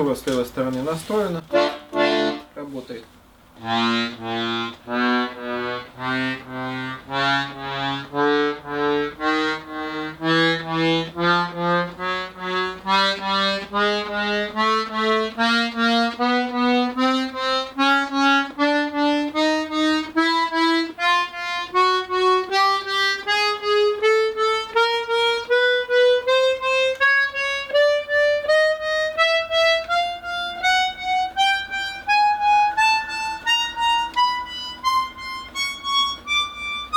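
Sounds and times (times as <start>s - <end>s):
button accordion playing a scale: 0.9s - 2.9s, 3.5s - 36.9s.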